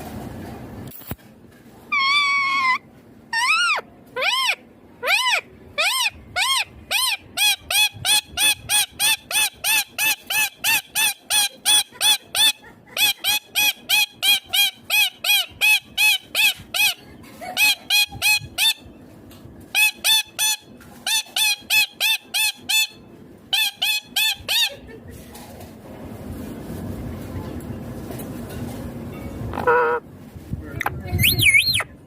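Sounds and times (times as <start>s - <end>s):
parakeet squawking: 1.9s - 12.5s, 29.6s - 30.0s, 30.8s - 31.9s.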